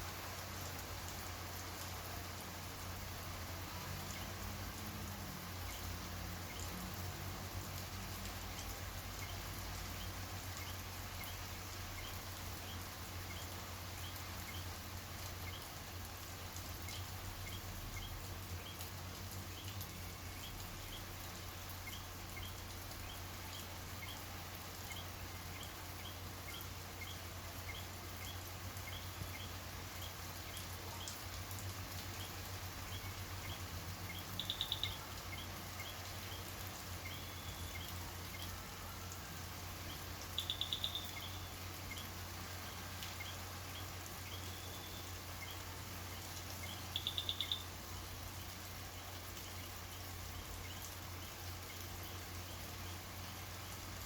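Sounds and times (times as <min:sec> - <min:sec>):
steady rain pattering: 0:00.0 - 0:54.0
night animal chirping: 0:34.4 - 0:35.4, 0:40.3 - 0:42.0, 0:46.9 - 0:47.7.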